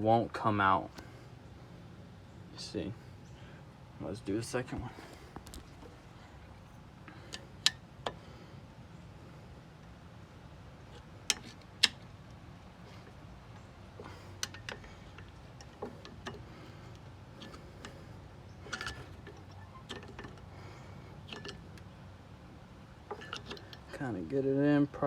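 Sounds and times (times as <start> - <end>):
low steady hum: 0.0 - 25.0
metallic clicks and taps of tools: 14.3 - 18.0.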